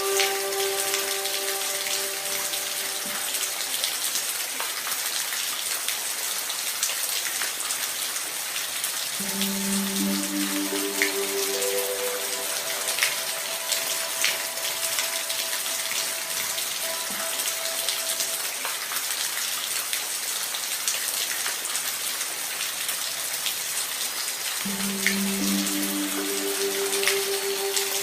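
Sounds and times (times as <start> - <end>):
steady rain: 0.0 - 28.0
soft held music tones: 9.2 - 18.6, 24.6 - 28.0
raindrops ticking: 24.6 - 28.0.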